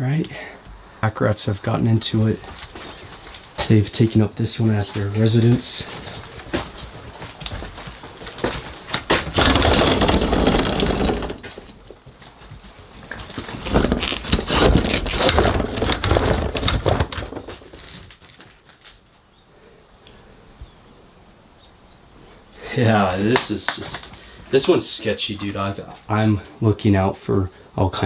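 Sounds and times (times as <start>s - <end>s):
debris crunching and clattering: 4.8s - 19.0s.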